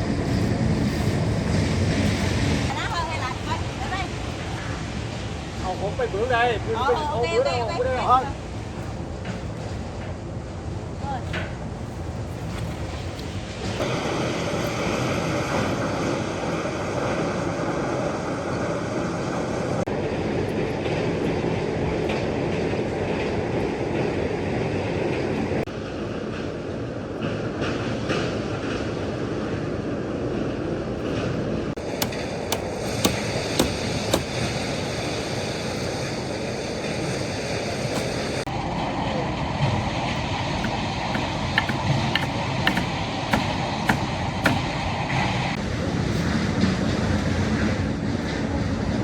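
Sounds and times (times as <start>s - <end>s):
concrete mixer drum rumbling: 40.5s - 44.8s.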